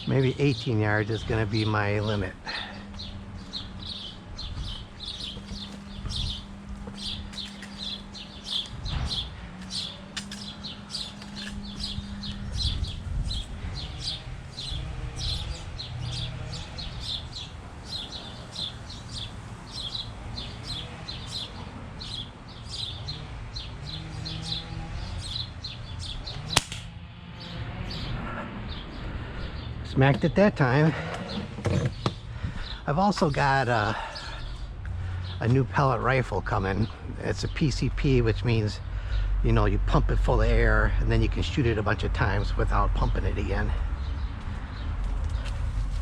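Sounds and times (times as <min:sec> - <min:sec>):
bird chirping high calls: 0:01.0 - 0:26.6
pellet pistol firing crack: 0:26.5 - 0:27.0.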